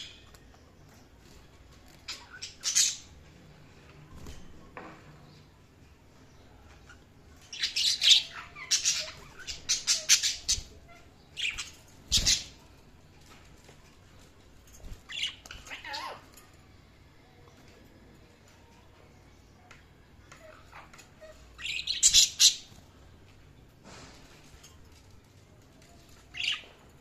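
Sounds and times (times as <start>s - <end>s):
budgerigars chirping and squawking: 2.0s - 3.1s, 7.4s - 12.6s, 15.0s - 16.2s, 20.3s - 22.7s.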